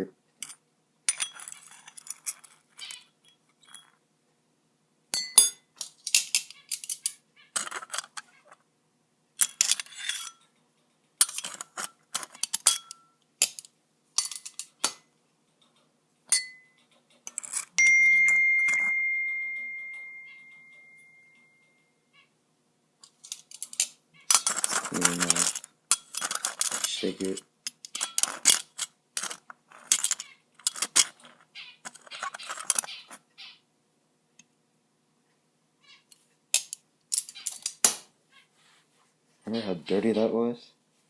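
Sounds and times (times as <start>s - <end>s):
ringing coin clink: 0.4s - 2.6s, 5.2s - 8.1s, 11.2s - 13.2s, 16.3s - 21.9s
coins clinking in a container: 6.1s - 8.2s, 17.3s - 20.2s, 23.2s - 27.1s, 27.9s - 32.9s.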